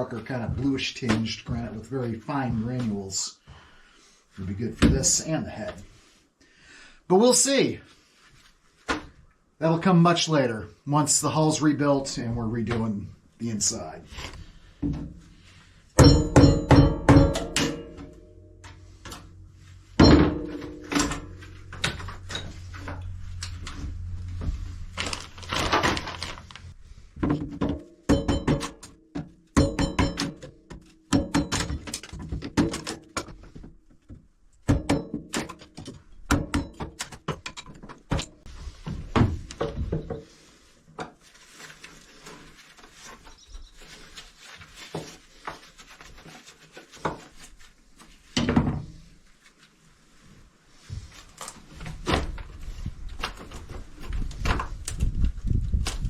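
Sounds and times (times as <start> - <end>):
wood being pried and broken: 51.4 - 56.0.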